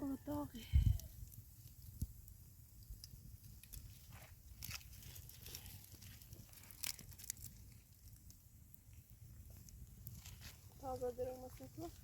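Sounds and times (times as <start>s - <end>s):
crunching and rustling: 3.6s - 12.0s.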